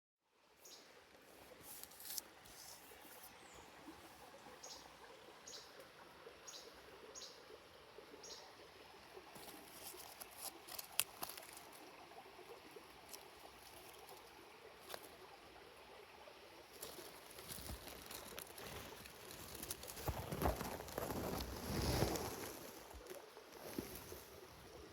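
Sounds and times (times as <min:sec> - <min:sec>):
dry leaves crackling and rustling: 0:09.4 - 0:11.8, 0:16.8 - 0:24.2.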